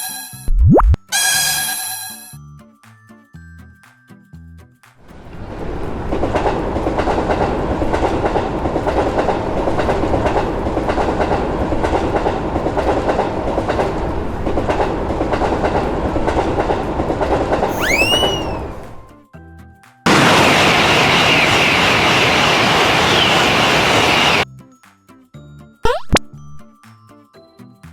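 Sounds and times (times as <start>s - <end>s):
wheels clacking over rail joints: 5.1s - 19.0s, 20.1s - 24.4s
train passing: 5.1s - 19.1s, 20.1s - 24.4s
rising and falling tone: 17.7s - 19.0s, 25.9s - 26.3s.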